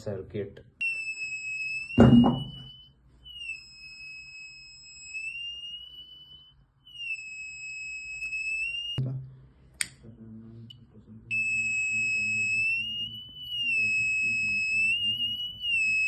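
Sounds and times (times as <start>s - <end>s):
buzzer high-pitched tone: 0.8s - 9.0s, 11.3s - 16.0s
loud thump: 2.0s - 2.6s.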